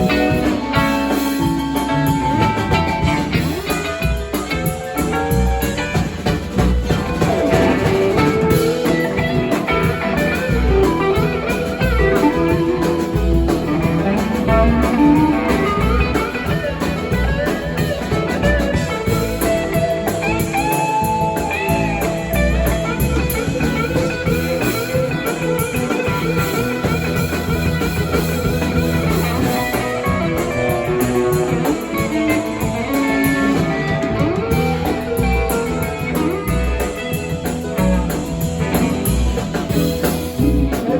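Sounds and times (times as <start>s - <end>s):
bass: 0.0s - 40.9s
drum kit: 0.0s - 40.9s
electric guitar: 0.0s - 40.9s.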